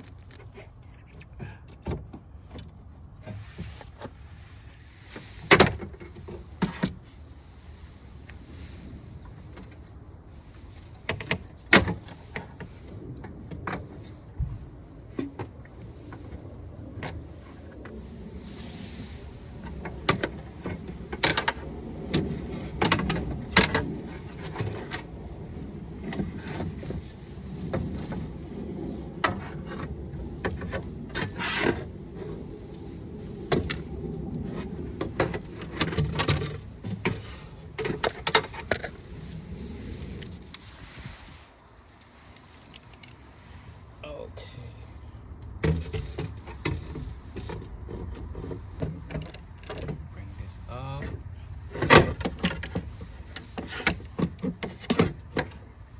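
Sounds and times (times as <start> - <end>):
car window regulator clicking and rattling: 19.4 - 39.2, 45.5 - 50.1, 51.6 - 55.8.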